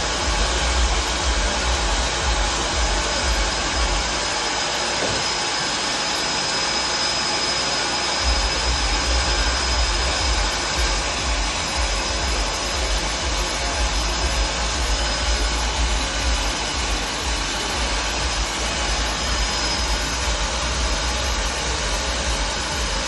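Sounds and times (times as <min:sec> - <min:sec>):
sawmill running with whine: 0:00.0 - 0:23.0.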